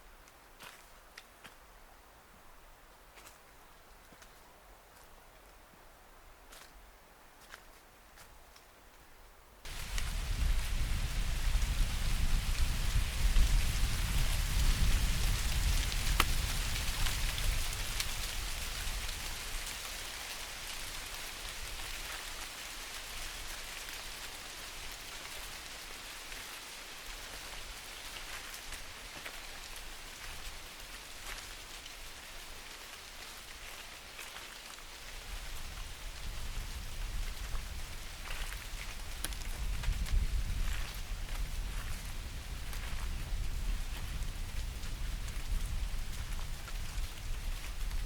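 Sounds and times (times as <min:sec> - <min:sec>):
rain on leaves: 0:09.6 - 0:48.0.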